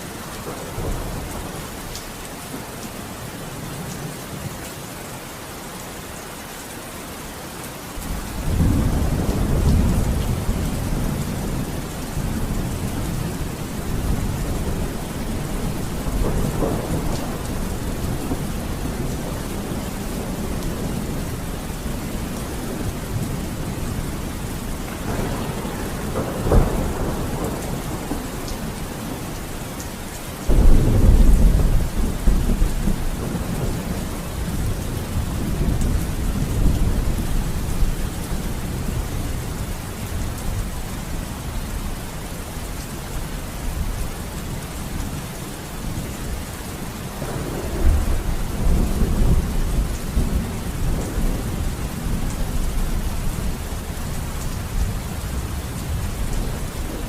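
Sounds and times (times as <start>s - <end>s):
heavy rain: 0.0s - 57.0s
rolling thunder: 8.0s - 41.2s, 47.0s - 57.0s
sharp thunderclap: 14.0s - 21.4s, 24.9s - 29.4s, 30.5s - 37.6s.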